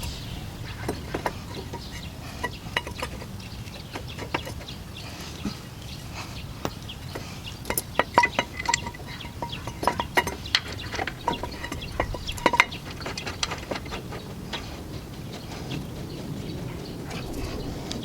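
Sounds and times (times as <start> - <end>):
metal tools clinking: 7.6 - 14.2.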